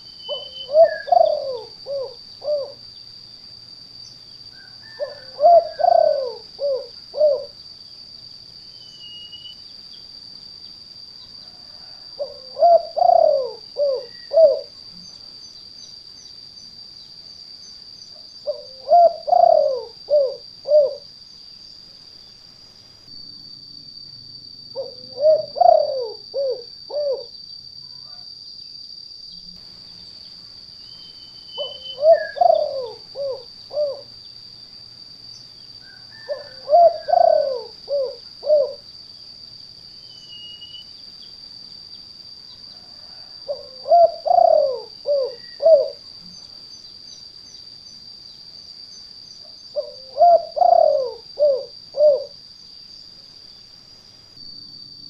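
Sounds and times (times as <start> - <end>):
steady high-pitched whine: 0.0 - 55.0
dove cooing: 0.3 - 2.8, 4.6 - 7.6, 11.6 - 14.8, 18.4 - 21.1, 24.7 - 27.3, 31.6 - 34.1, 36.1 - 38.8, 42.8 - 46.0, 49.7 - 52.4.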